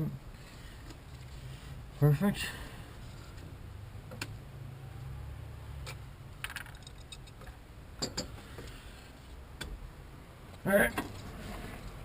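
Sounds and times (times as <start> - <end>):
small metal tools clinking: 6.4 - 7.4.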